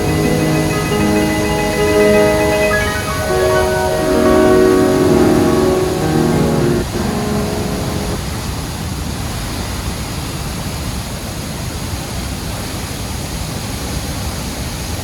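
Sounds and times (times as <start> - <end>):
background music: 0.0 - 8.2
large waterfall roaring: 0.0 - 15.0.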